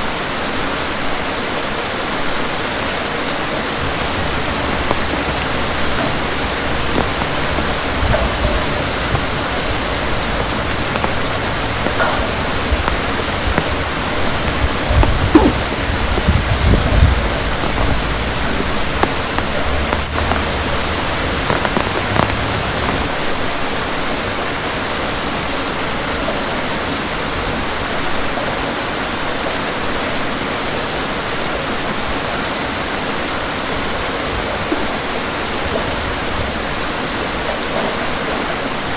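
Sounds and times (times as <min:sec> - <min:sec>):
heavy rain: 0:00.2 - 0:38.9
thunder rumbling: 0:03.8 - 0:23.1.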